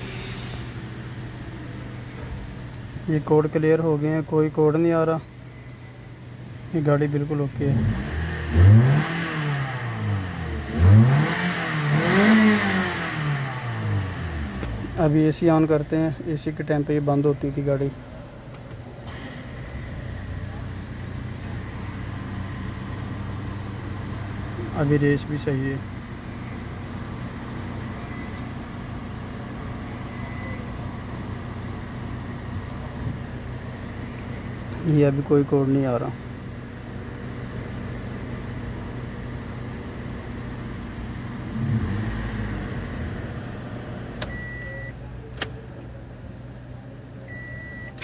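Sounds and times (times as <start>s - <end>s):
car engine idling: 0.0s - 8.0s, 8.6s - 48.0s
car engine revving: 7.6s - 15.9s, 37.1s - 44.6s.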